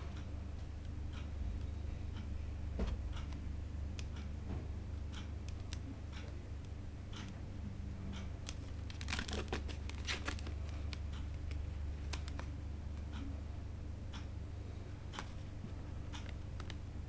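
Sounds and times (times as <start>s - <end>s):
low steady hum: 0.0s - 17.0s
packaging crinkling and tearing: 8.8s - 10.6s.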